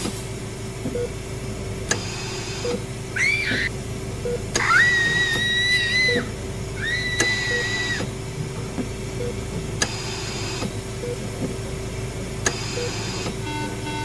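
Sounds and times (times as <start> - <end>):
high squeal bending down: 3.2 - 3.7, 4.6 - 8.1
soft low beep: 9.2 - 9.4, 11.0 - 11.2, 12.7 - 14.0.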